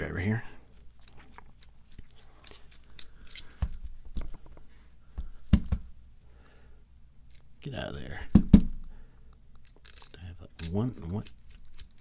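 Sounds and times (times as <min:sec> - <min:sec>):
tools clinking against padlock: 0:02.4 - 0:03.5, 0:09.6 - 0:12.0.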